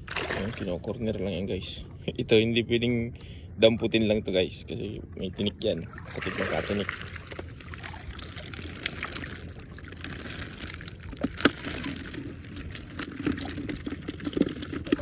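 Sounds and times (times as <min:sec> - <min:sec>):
water sloshing and splashing: 0:00.0 - 0:02.3, 0:05.0 - 0:15.0.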